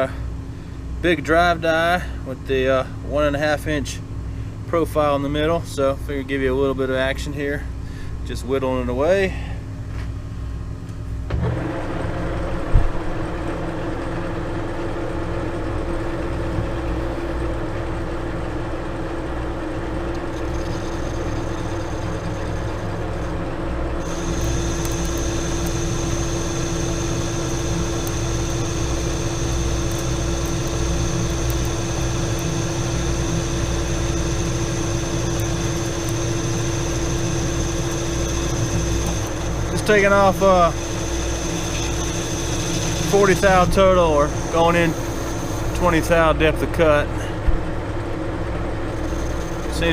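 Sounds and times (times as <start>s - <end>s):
metal lathe running: 20.2s - 46.8s, 48.8s - 49.9s
high-pitched cutting whine: 20.2s - 47.3s, 48.8s - 49.9s.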